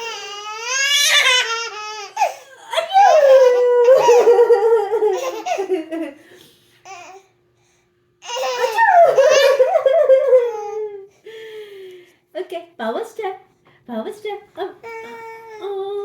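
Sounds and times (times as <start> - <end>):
little girl laughing: 2.5 - 6.2, 8.4 - 11.1.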